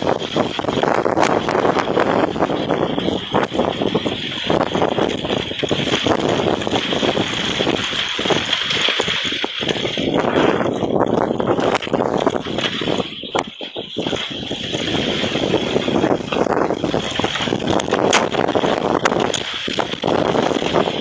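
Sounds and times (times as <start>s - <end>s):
crackling knocks: 0.0s - 21.0s
wind buffeting microphone: 0.0s - 21.0s.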